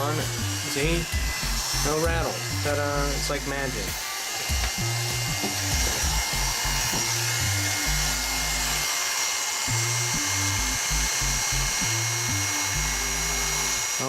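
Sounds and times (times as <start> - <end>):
music with stepping bass line: 0.0 - 8.8, 9.7 - 13.8
electric hair clipper whining: 0.0 - 14.0.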